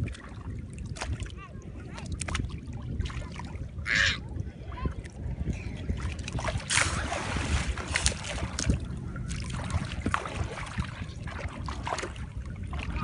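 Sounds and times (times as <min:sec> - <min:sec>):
sea water splashing around boat: 0:00.0 - 0:13.0
wind rumble on microphone: 0:00.0 - 0:13.0.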